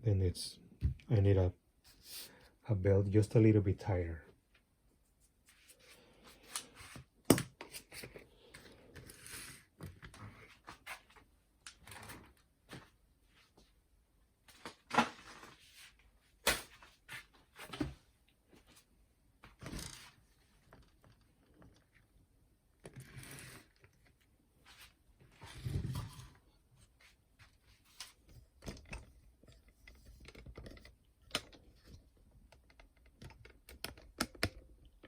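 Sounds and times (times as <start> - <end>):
plastic and metal parts clicking: 28.6 - 35.0.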